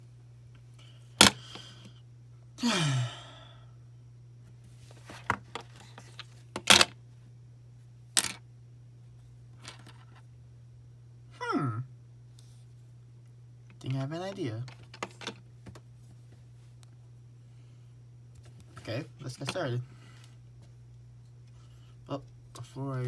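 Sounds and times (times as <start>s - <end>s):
steady low hum: 0.0s - 23.0s
short falling sigh: 2.6s - 3.7s.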